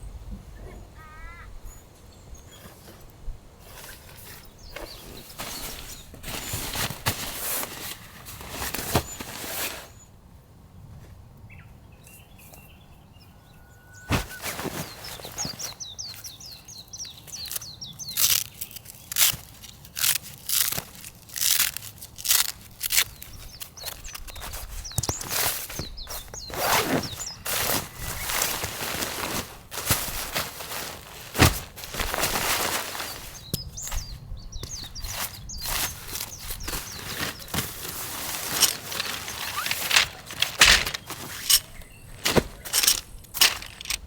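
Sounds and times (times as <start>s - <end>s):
high bird chirps: 1.0s - 1.9s
rustles and knocks: 19.1s - 44.0s.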